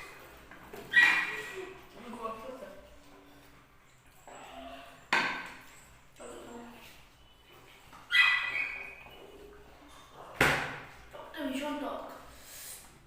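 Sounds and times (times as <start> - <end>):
dog barking: 8.1 - 8.8.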